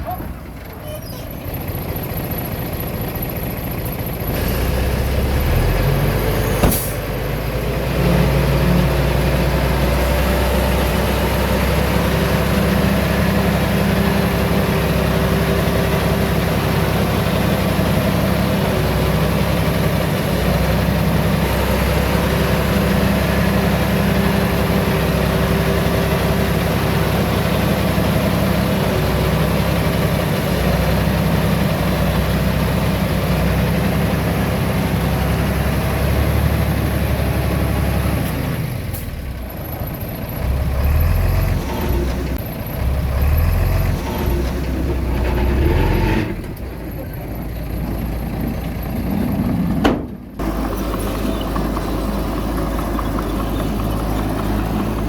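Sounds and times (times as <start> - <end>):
diesel engine running: 0.0 - 55.0
sharp knock: 6.6 - 7.0.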